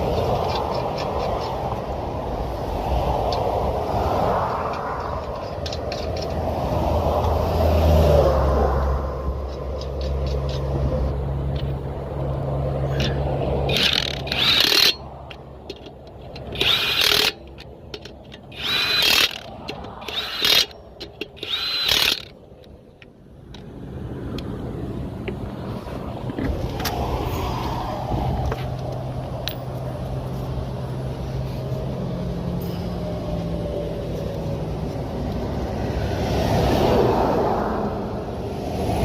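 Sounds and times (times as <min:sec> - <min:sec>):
low vehicle engine hum: 0:00.0 - 0:39.0
impact wrench whining: 0:12.9 - 0:22.8.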